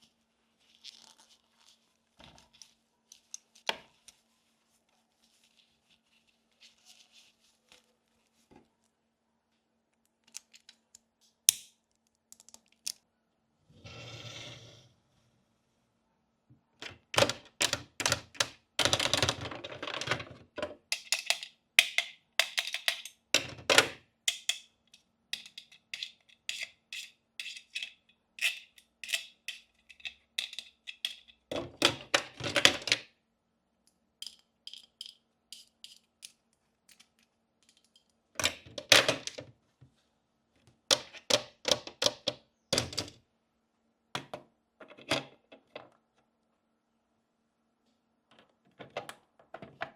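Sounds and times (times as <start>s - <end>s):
toy pieces clicking and tapping: 20.9s - 32.4s, 34.2s - 39.4s.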